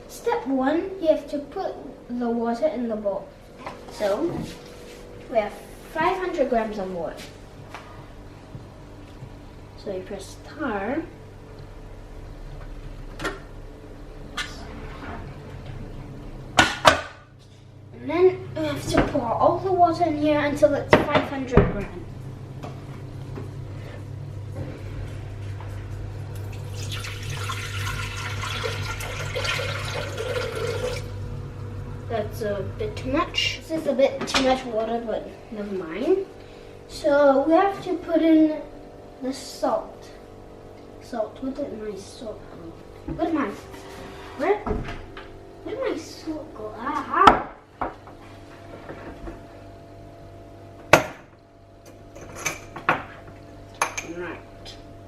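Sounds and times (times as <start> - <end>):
steady low hum: 0.0 - 55.0
water pouring into a bowl: 26.4 - 31.2.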